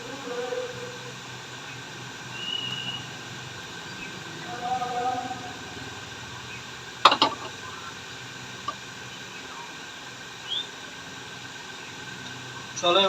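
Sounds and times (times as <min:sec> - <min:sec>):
steady low hum: 0:00.0 - 0:13.0
brief rising chirp: 0:02.3 - 0:03.2.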